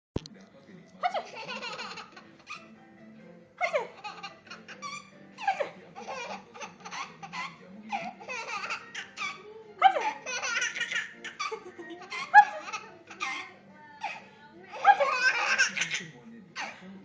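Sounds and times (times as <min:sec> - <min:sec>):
baby laughing: 0:01.0 - 0:02.7, 0:03.6 - 0:16.8.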